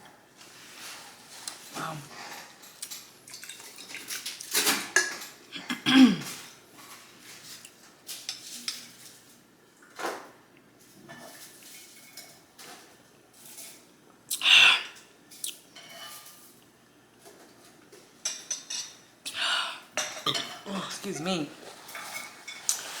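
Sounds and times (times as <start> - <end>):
utensils clinking on dishes: 2.2 - 5.5, 10.8 - 13.9, 15.4 - 16.6, 17.3 - 19.1, 20.0 - 23.0.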